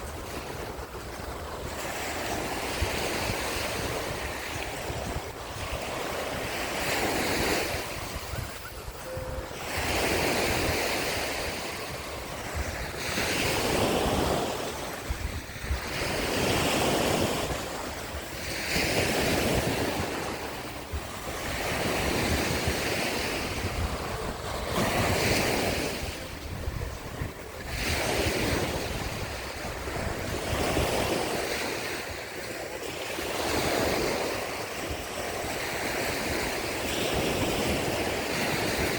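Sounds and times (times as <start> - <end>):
sea waves breaking: 0.0 - 38.9
wind on microphone: 0.0 - 38.9.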